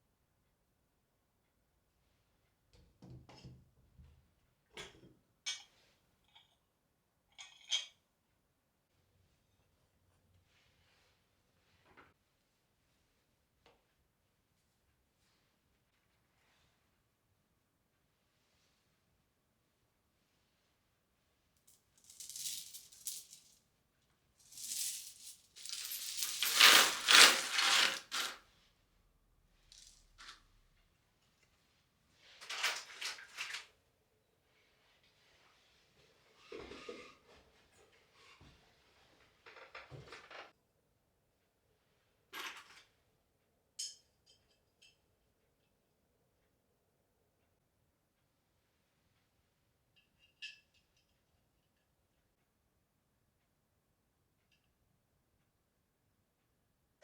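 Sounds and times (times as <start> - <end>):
rattling: 25.6 - 28.3
objects knocking and clattering: 25.6 - 28.4.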